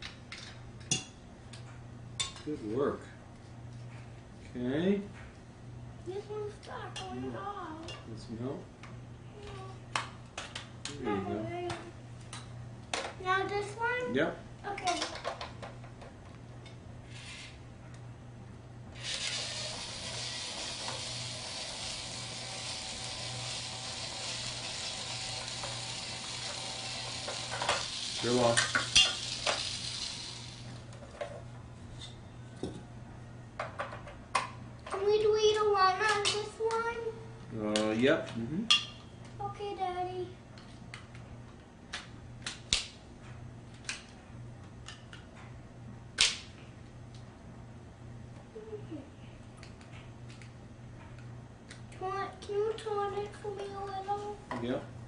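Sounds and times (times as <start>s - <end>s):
battery drill whirring: 19.0s - 30.8s.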